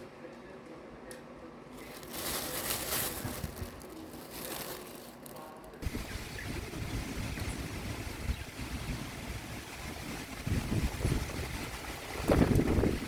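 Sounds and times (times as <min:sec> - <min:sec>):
storm wind and rain rushing: 0:05.8 - 0:13.0
wind buffeting microphone: 0:05.8 - 0:13.0.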